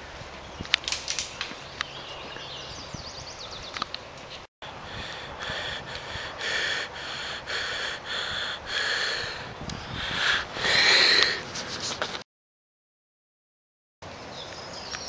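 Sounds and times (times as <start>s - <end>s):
person breathing hard: 4.7s - 11.8s.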